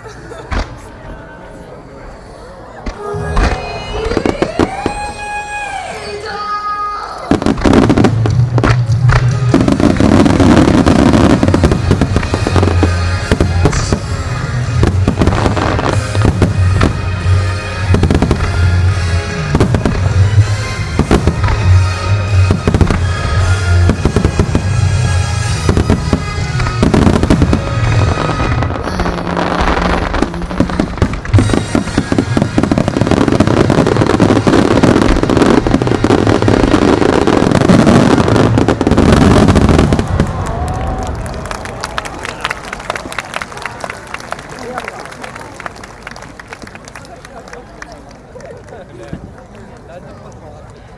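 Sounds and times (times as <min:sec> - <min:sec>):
fireworks bursting: 0:00.5 - 0:43.6
fireworks crackle: 0:02.8 - 0:47.8
music: 0:03.0 - 0:40.0.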